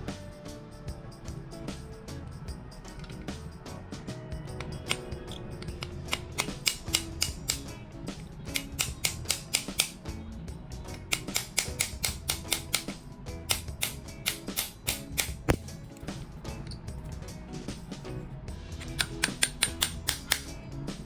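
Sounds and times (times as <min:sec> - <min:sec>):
background music: 0:00.0 - 0:21.0
sharp clicks or taps: 0:04.6 - 0:07.7, 0:08.5 - 0:10.0, 0:10.9 - 0:12.9, 0:13.5 - 0:15.7, 0:18.8 - 0:20.5.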